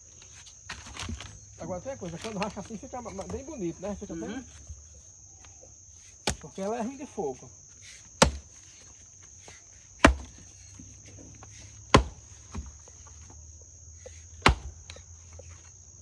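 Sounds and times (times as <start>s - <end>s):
cricket trill: 0.0s - 16.0s
axe chopping firewood: 6.0s - 6.9s, 7.8s - 13.1s, 14.0s - 15.5s.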